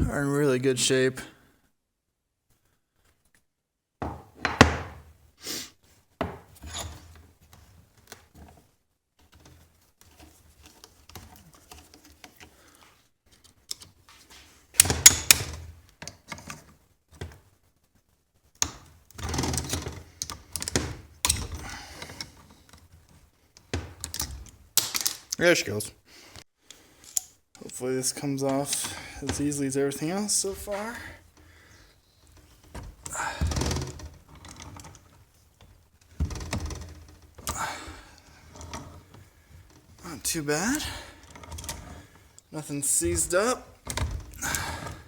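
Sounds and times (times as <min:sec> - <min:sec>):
metal tools clunking: 0:28.4 - 0:31.6.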